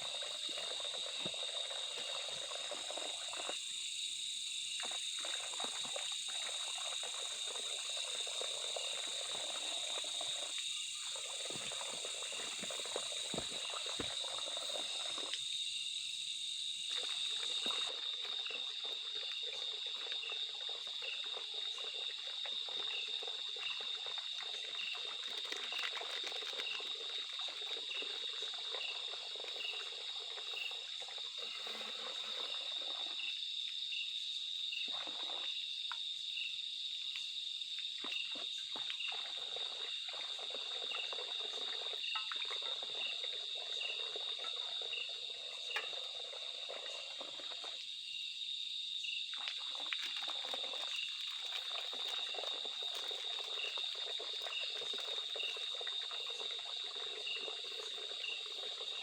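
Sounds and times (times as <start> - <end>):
insects shrilling and chirping: 0.0 - 19.4
low background frog chorus: 0.0 - 59.0.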